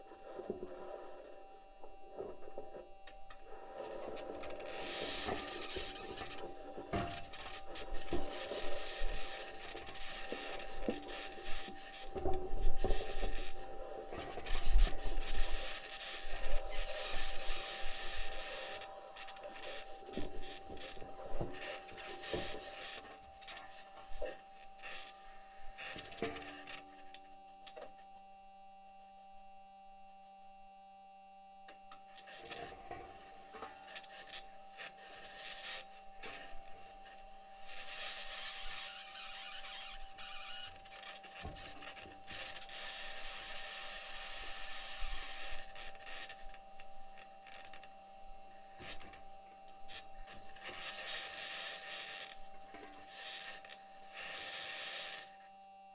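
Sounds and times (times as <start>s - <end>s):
steady humming tones: 0.0s - 55.9s
rover wheels grinding and scraping: 3.4s - 22.8s
high-pitched scratching: 37.1s - 46.3s.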